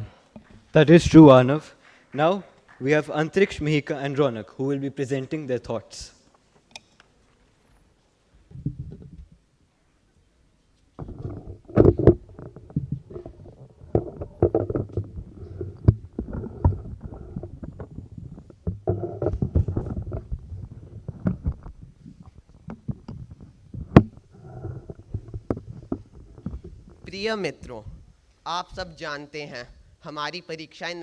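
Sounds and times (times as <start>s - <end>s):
thumps and knocks on microphone: 8.5s - 9.4s, 11.0s - 27.2s.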